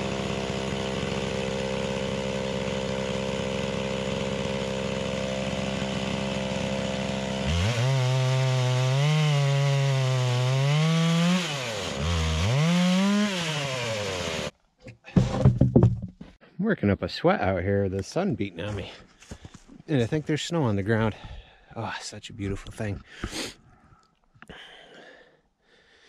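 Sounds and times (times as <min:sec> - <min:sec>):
chainsaw ripping log: 0:00.0 - 0:14.5, 0:15.1 - 0:16.2.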